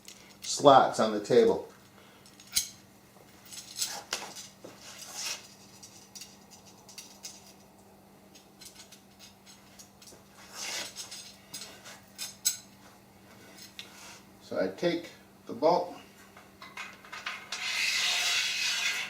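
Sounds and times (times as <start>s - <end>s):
steel bolts clinking on aluminum: 8.3s - 10.2s.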